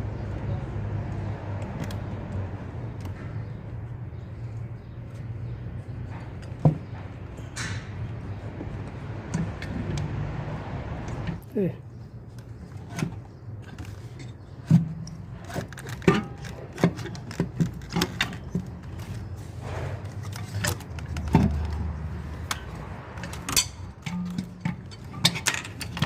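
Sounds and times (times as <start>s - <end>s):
metal tools clinking and knocking: 20.0s - 26.0s.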